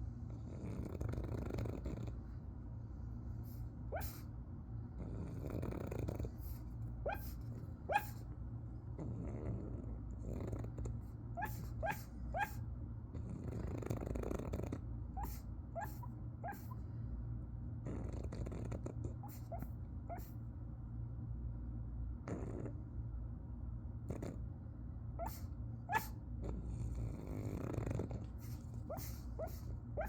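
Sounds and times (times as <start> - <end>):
dog snoring: 0.2 - 2.5, 3.5 - 4.3, 4.9 - 8.2, 8.8 - 16.8, 17.8 - 20.3, 22.2 - 22.9, 24.0 - 24.5, 25.2 - 30.0
muffled dog sleep barks: 3.5 - 4.3, 5.2 - 8.3, 11.4 - 12.6, 13.4 - 16.8, 18.0 - 20.4, 25.2 - 30.0.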